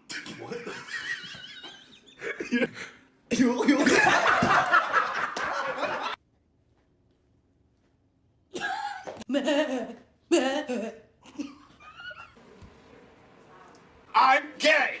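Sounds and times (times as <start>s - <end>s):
people laughing: 0.4s - 2.9s, 3.7s - 6.2s.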